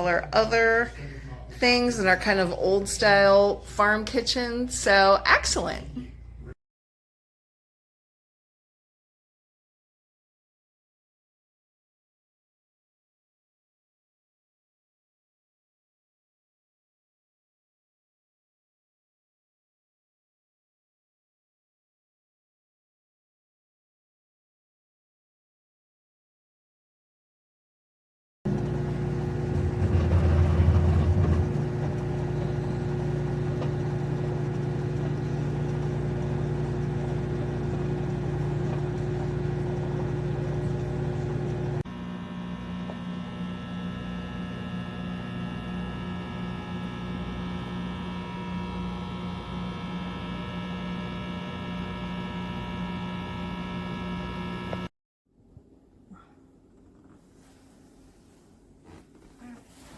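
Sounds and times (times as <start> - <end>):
microwave oven humming: 28.5 - 54.9.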